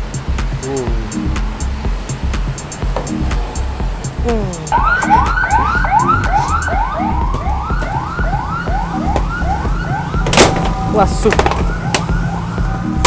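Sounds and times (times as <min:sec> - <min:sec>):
background music with low beat: 0:00.0 - 0:13.0
siren yelping: 0:04.2 - 0:13.0.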